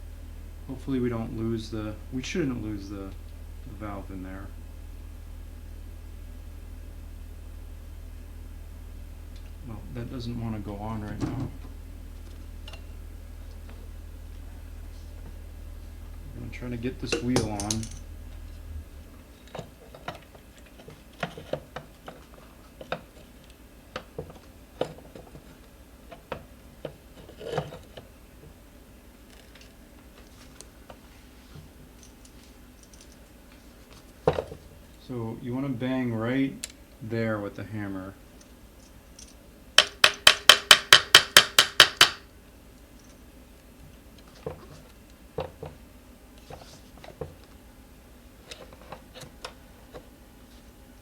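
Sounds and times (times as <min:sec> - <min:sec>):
metal parts clattering: 0:17.1 - 0:18.0
metal parts clicking and knocking: 0:17.1 - 0:18.0, 0:39.2 - 0:42.2
hammer banging on metal wheel: 0:39.8 - 0:42.3.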